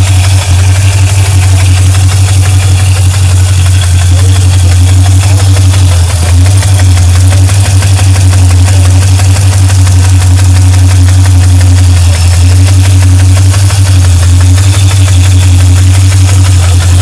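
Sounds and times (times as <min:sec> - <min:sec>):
engine idling: 0:00.0 - 0:17.0
rapid engine ticking: 0:00.0 - 0:17.0.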